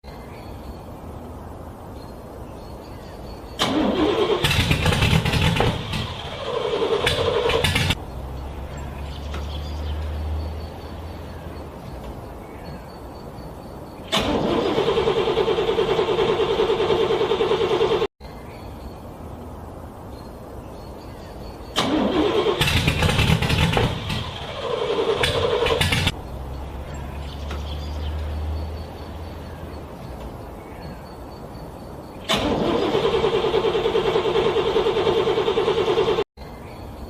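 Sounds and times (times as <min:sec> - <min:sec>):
car starter cranking engine: 0:03.6 - 0:08.0, 0:14.1 - 0:18.1, 0:21.7 - 0:26.2, 0:32.2 - 0:36.3.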